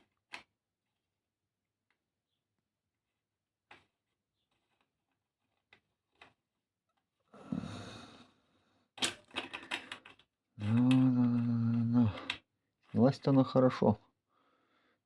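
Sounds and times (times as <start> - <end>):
hand tools clicking and rattling: 9.0 - 12.4
person humming: 10.6 - 12.3.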